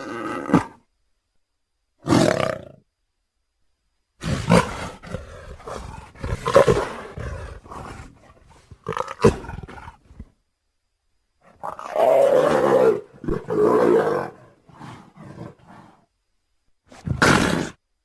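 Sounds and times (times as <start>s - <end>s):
animal roars and growls: 4.2s - 10.0s, 11.6s - 16.0s, 16.9s - 17.8s.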